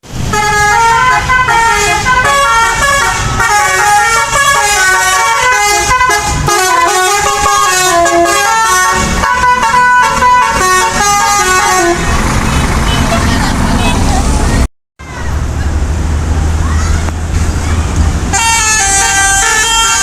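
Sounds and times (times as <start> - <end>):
bus musical horn tune: 0.2 - 13.3, 18.3 - 20.0.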